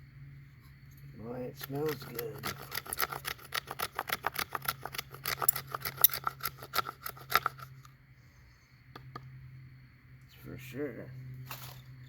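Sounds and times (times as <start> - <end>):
knife scraping wood: 1.6 - 7.9.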